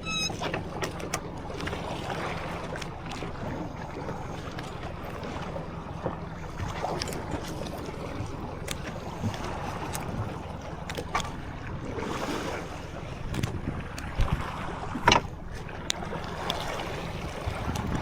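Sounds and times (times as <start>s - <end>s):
clicks and knocks from boat: 0.0s - 18.0s
outboard motor running: 0.0s - 18.0s
wind on microphone: 17.0s - 18.0s.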